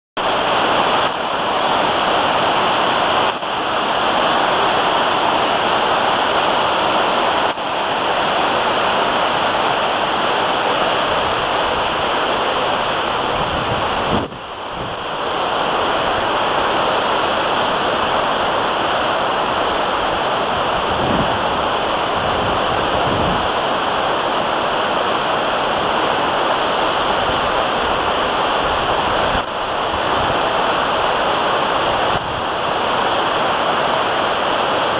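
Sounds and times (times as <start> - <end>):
rushing wake water: 0.2 - 34.9
wind buffeting microphone: 12.7 - 15.2, 20.0 - 23.6, 31.8 - 33.0.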